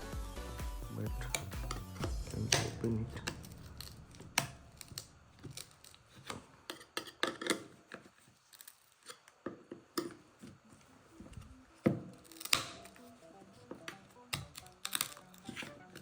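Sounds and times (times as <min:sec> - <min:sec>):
tool prying and scraping: 0:01.3 - 0:10.2.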